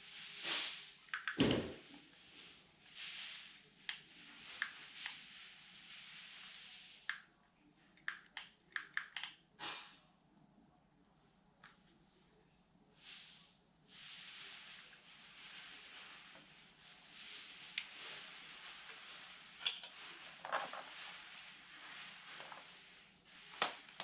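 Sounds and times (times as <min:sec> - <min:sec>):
soft rustling hisses: 0:00.0 - 0:08.2, 0:11.7 - 0:24.0
sharp clicks and taps: 0:01.1 - 0:01.6, 0:08.0 - 0:09.4.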